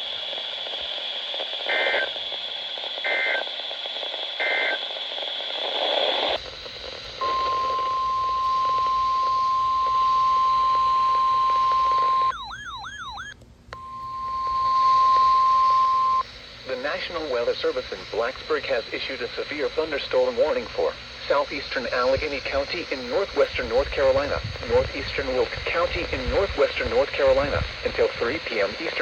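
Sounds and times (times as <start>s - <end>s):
radio hiss: 0.0s - 12.3s, 13.8s - 29.0s
short two-pitch data bursts: 7.2s - 16.2s
warbling siren-like sweep: 12.0s - 13.3s.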